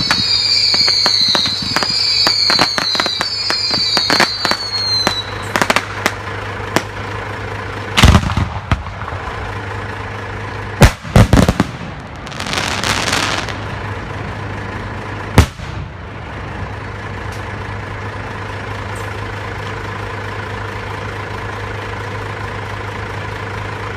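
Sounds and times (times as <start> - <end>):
firework bangs: 0.0 - 7.0, 8.0 - 9.4, 10.8 - 13.8, 15.4 - 16.0
firework crackling: 0.0 - 7.2, 8.0 - 9.6, 10.8 - 14.0
low hum: 0.0 - 23.9.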